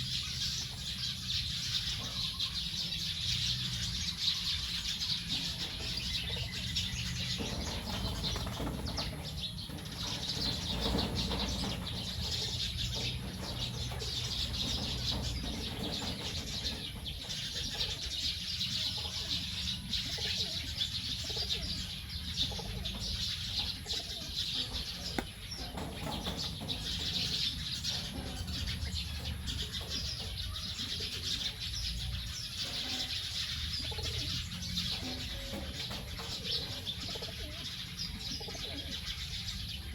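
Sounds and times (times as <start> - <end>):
flock of birds chirping: 0.0 - 39.9.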